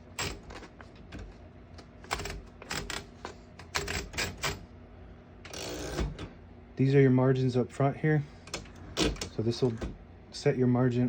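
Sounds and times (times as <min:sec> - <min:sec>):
typewriter mechanical rasp: 0:00.0 - 0:00.7, 0:02.0 - 0:04.6, 0:08.5 - 0:09.4.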